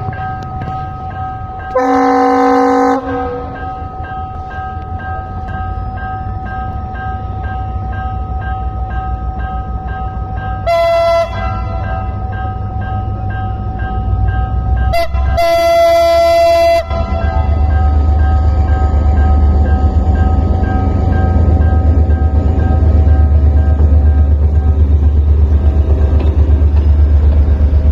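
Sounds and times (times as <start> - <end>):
diesel locomotive engine rumble: 0.0 - 27.9
locomotive horn blasts: 1.8 - 3.6, 10.6 - 11.9, 14.9 - 17.4.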